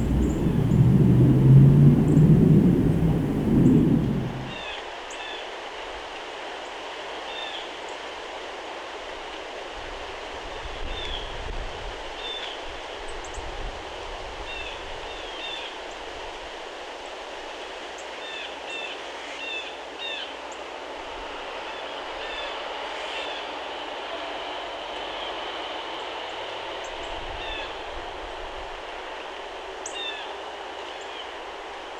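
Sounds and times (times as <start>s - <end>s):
outdoor background rumble and hiss: 0.0s - 4.6s.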